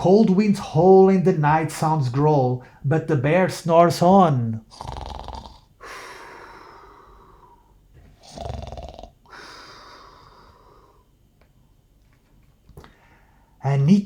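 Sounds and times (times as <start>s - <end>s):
person imitating snoring: 4.7s - 7.6s, 8.2s - 11.0s.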